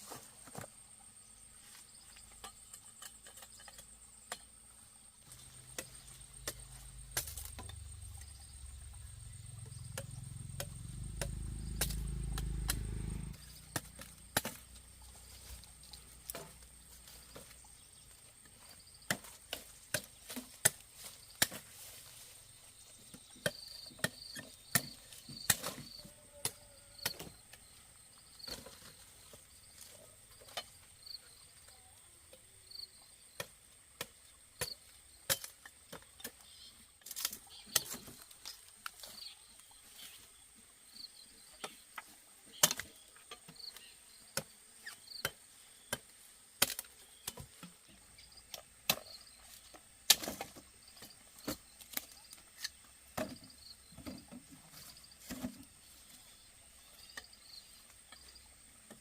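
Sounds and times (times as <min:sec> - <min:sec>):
knife chopping sugarcane: 0:09.8 - 0:12.9, 0:13.7 - 0:14.7, 0:23.4 - 0:26.0, 0:42.5 - 0:47.6.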